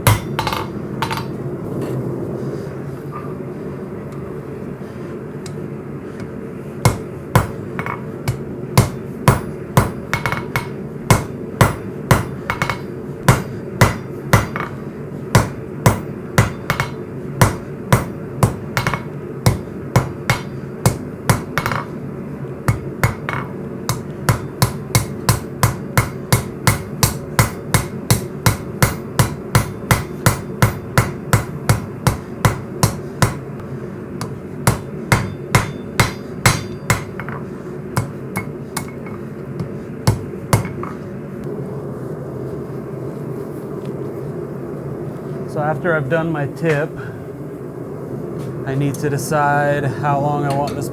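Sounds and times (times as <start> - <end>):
hammer striking steel on anvil: 0.0 - 1.4, 6.2 - 14.8, 15.4 - 22.0, 22.7 - 33.6, 34.2 - 41.1, 50.5 - 50.9
steady low hum: 0.0 - 50.9.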